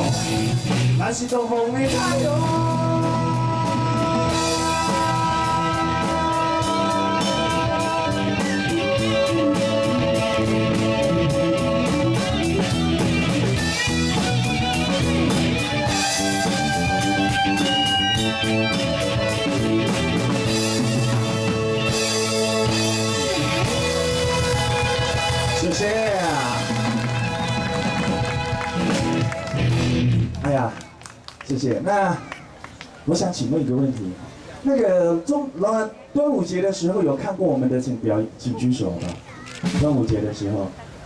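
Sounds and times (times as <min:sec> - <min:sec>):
drum kit beat: 0:00.0 - 0:30.4
bass guitar: 0:00.0 - 0:30.6
electric guitar lead notes: 0:01.8 - 0:30.4.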